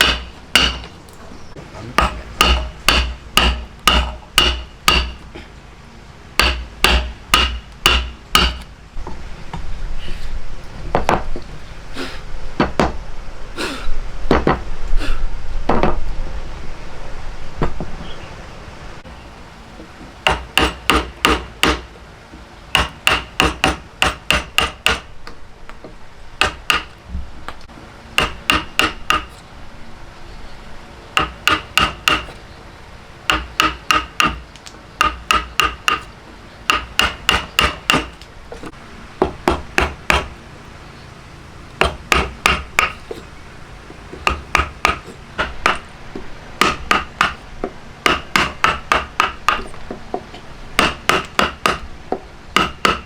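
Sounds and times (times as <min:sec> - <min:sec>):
hammer blows ringing: 0:00.0 - 0:01.0, 0:01.8 - 0:05.3, 0:06.4 - 0:08.7, 0:20.2 - 0:21.9, 0:33.3 - 0:34.4, 0:36.7 - 0:40.3.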